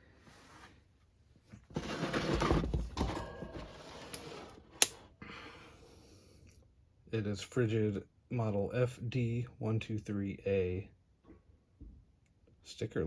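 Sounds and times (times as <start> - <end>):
fan rubbing and scraping: 1.7 - 4.9.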